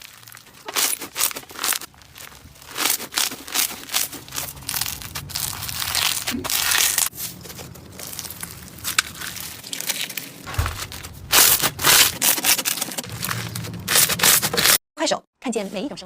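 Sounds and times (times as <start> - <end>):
slime crackling when squeezed: 0.0 - 7.2.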